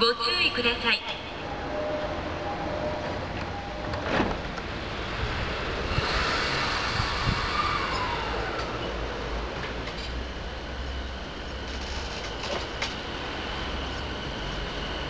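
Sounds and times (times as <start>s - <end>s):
train doors shutting: 1.0s - 10.3s, 11.5s - 13.2s
train pulling away rumble: 1.3s - 15.0s.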